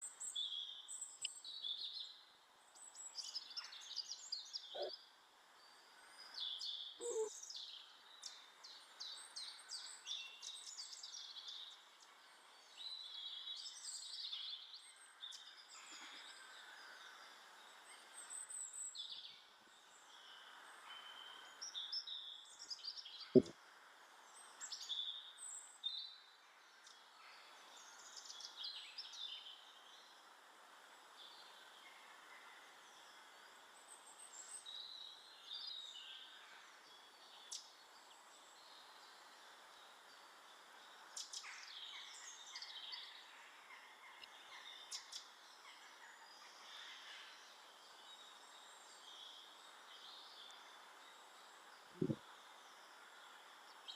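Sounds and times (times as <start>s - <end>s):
small birds chirping: 0.0s - 23.5s, 24.2s - 53.9s.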